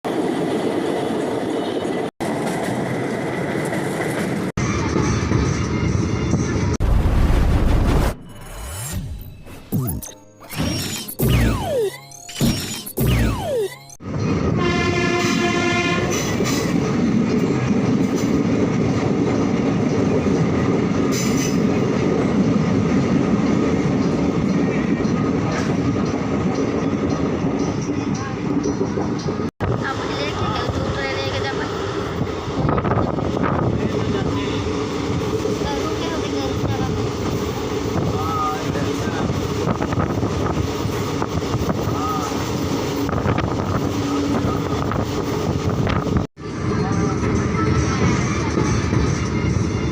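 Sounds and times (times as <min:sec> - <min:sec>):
train rumbling: 0:00.1 - 0:08.4, 0:13.3 - 0:49.9
wind noise on microphone: 0:21.7 - 0:35.5, 0:36.6 - 0:49.8.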